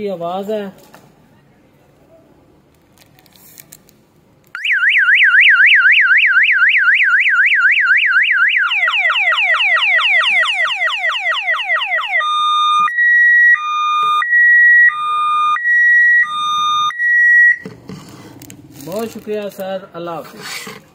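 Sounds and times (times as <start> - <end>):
electronic siren cycling tones: 4.6 - 17.8.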